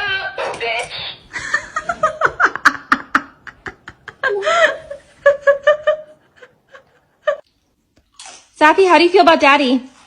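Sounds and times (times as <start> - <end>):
person laughing: 1.3 - 7.4.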